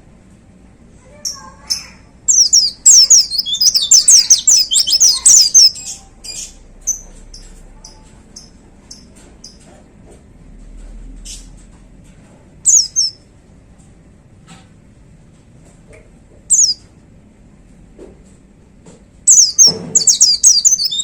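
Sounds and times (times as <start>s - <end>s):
bird high chirps: 1.2s - 9.6s, 12.6s - 13.2s, 16.5s - 16.8s, 19.3s - 21.0s
bird sharp downward notes: 2.3s - 5.8s, 19.3s - 21.0s.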